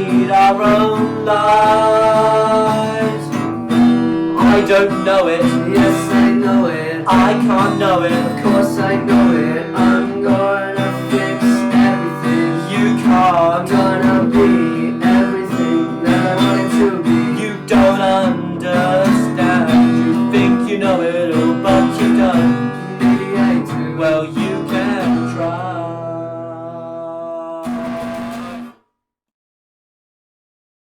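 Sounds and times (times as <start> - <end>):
strummed acoustic guitar: 0.0 - 28.8.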